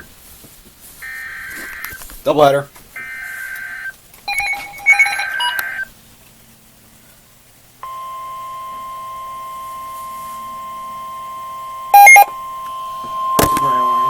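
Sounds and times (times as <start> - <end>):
faint static hum: 0.0 - 14.0
screechy data bursts: 1.0 - 2.0, 3.0 - 5.9, 10.7 - 14.0
steady warning alarm tone: 1.0 - 2.0, 3.0 - 5.9, 7.8 - 14.0.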